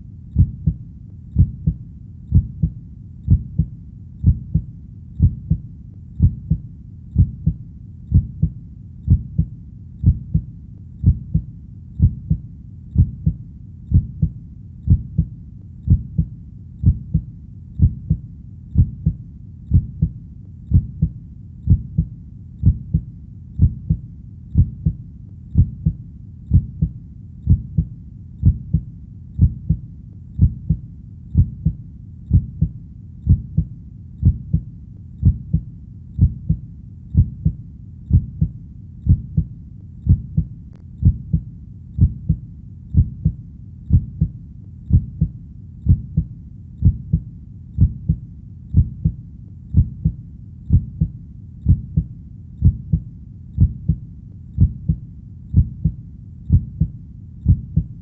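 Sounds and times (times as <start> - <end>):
faint steady rumble: 0.0 - 58.0
heartbeat: 0.0 - 58.0.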